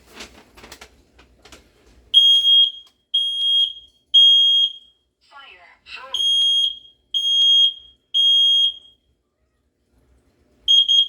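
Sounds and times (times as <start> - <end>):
high-pitched long alarm beeps: 6.2 - 8.9, 10.7 - 11.0.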